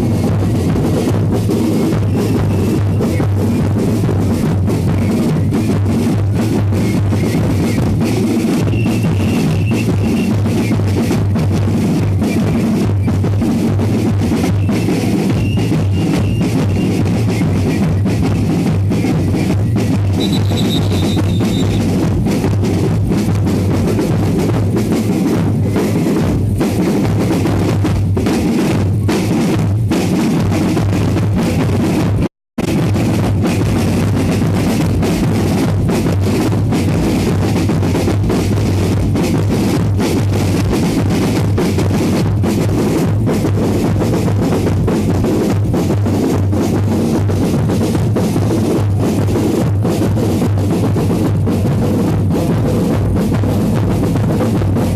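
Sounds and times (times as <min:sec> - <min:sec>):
loud drum music with cymbals: 0:00.0 - 0:54.9.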